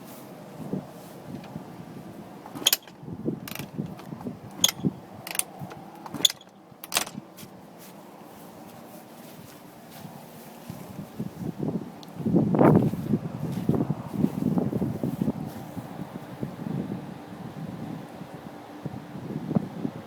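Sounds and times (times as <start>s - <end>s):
engine turning over: 2.4s - 7.3s
kick-starter clacking: 2.5s - 7.2s.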